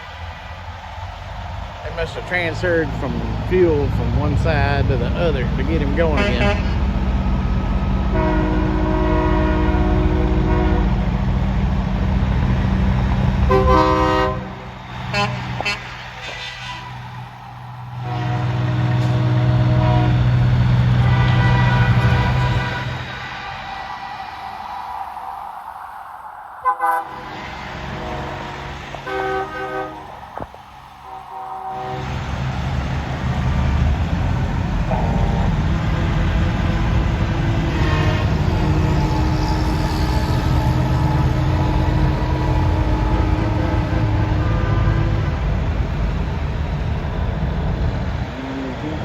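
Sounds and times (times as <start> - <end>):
truck engine rumbling: 0.0 - 49.0
truck air horn blasts: 4.4 - 7.0, 8.1 - 11.2, 13.4 - 17.2, 17.9 - 23.6, 26.6 - 32.5, 34.7 - 45.8.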